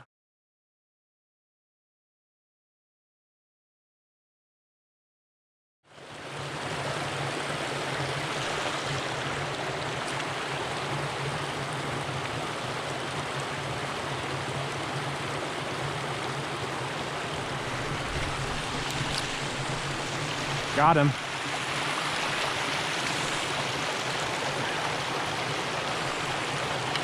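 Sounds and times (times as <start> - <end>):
creek water rushing: 5.9 - 27.0.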